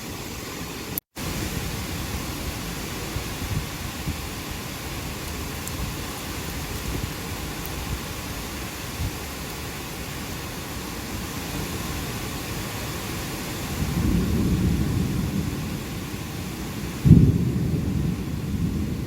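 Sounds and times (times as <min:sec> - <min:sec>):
steady rain: 0:00.0 - 0:19.0
thunder rumbling: 0:11.1 - 0:19.0.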